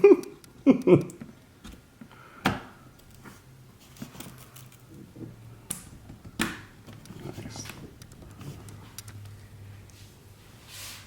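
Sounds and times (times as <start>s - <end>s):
computer parts clicking and tapping: 5.7s - 9.5s.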